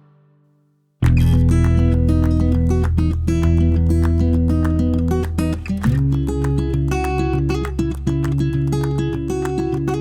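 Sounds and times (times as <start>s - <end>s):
acoustic guitar strummed and plucked: 0.0s - 10.0s
bass notes: 1.0s - 8.2s.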